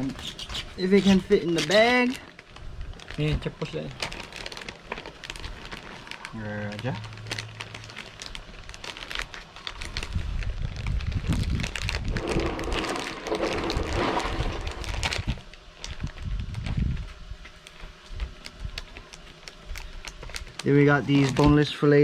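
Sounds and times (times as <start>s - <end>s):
plastic bag rustling: 0.0s - 21.6s.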